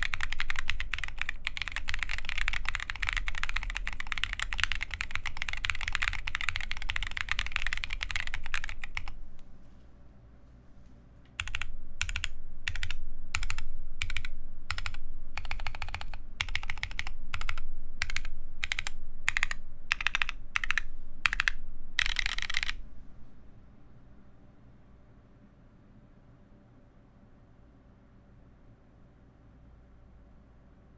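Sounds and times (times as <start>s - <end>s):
typing on mechanical keyboard: 0.0s - 9.2s, 11.4s - 22.8s.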